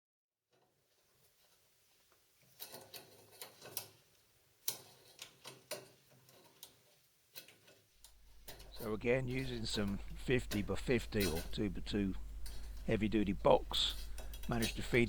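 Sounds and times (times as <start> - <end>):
light irregular clicks and knocks: 2.4 - 15.0
faint low hum: 8.0 - 15.0.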